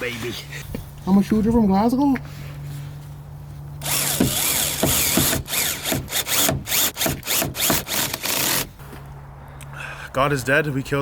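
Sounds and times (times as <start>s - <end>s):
power drill whining in bursts: 3.8s - 8.7s.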